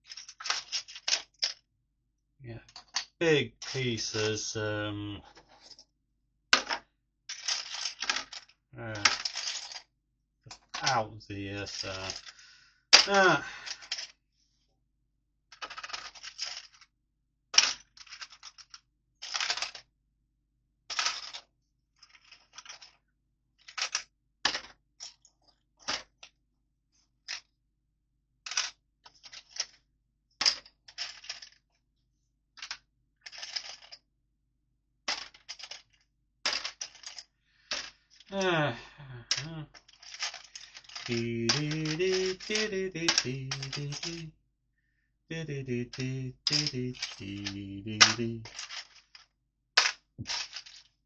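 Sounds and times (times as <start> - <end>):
plastic bricks clattering: 0.0 - 1.6, 6.6 - 9.8, 11.7 - 14.1, 15.5 - 16.9, 17.6 - 19.9, 20.9 - 21.4, 22.0 - 23.0, 23.6 - 26.3, 28.5 - 29.8, 30.4 - 31.6, 32.6 - 34.0, 35.1 - 38.3, 39.3 - 44.3, 45.8 - 51.0.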